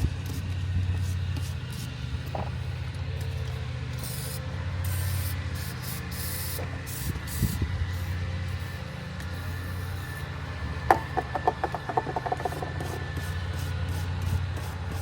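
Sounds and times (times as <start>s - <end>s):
aerosol spray can hissing: 4.0s - 10.2s.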